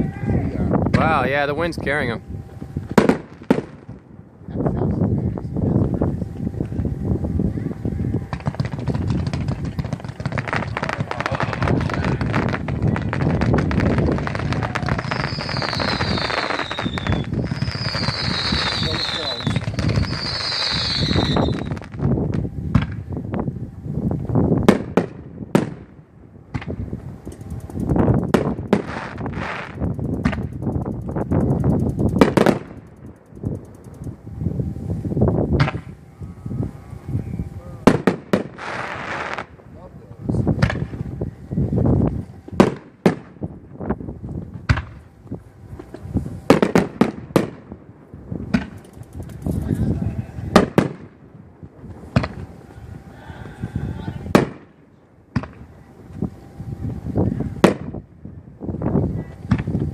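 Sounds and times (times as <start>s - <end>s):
low rumble: 0.0s - 20.1s
low rumbling: 0.0s - 59.9s
fireworks bangs and cracks: 2.5s - 4.7s, 8.2s - 23.2s, 24.6s - 34.0s, 37.8s - 39.7s, 40.5s - 41.0s, 41.9s - 52.6s, 54.2s - 56.3s, 57.6s - 58.0s, 59.4s - 59.9s.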